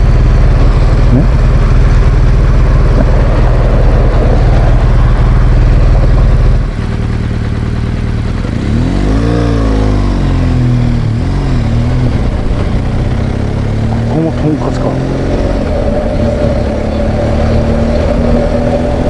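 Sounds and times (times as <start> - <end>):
motorcycle engine running: 0.0 - 19.0
rising and falling pitch: 14.4 - 19.0.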